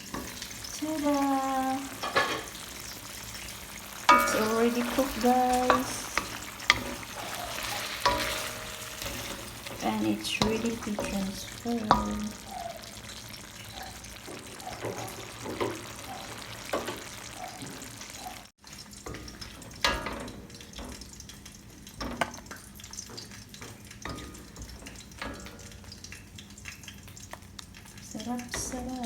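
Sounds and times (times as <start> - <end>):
spoon scraping a pan: 0.0 - 0.8, 1.8 - 17.9
faint sizzle from pan: 0.0 - 29.0.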